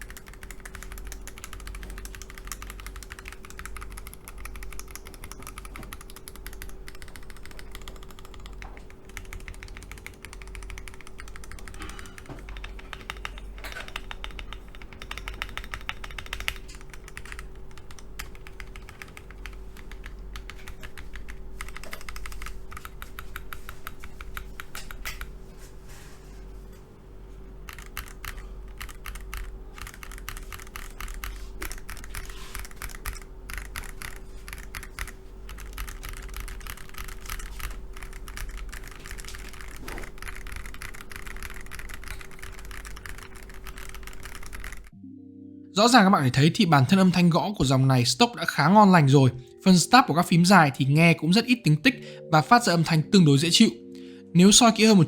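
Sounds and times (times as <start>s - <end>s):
mechanical keyboard typing: 0.0s - 25.4s, 27.6s - 45.0s.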